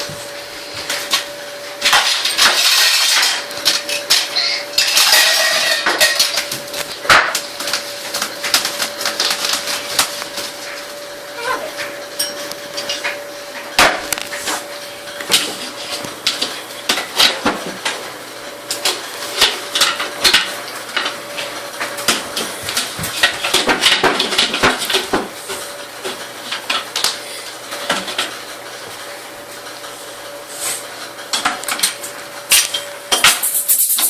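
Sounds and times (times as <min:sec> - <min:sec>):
dishes and cutlery clattering: 0:01.9 - 0:06.5.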